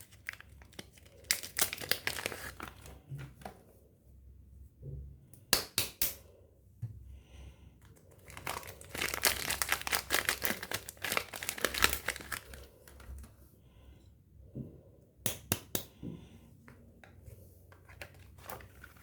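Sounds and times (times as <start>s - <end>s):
packaging crinkling: 0.0s - 3.0s, 8.1s - 13.3s, 17.8s - 19.0s.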